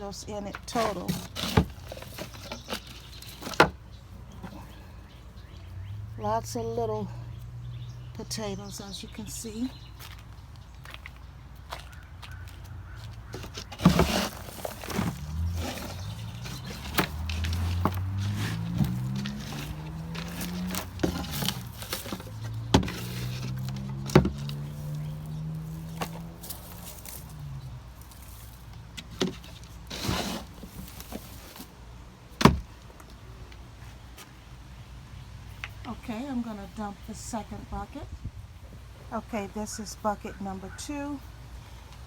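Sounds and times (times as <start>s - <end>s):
potatoes knocking and scraping: 0.4s - 4.8s, 11.7s - 33.1s.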